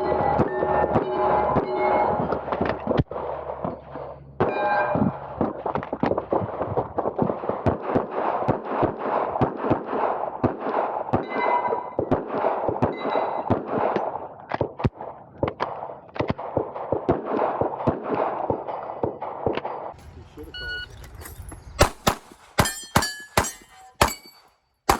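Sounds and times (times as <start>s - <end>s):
pistol shots: 7.1s - 11.3s, 12.0s - 20.2s, 21.7s - 24.9s
ringing ping of steel target: 22.6s - 24.5s.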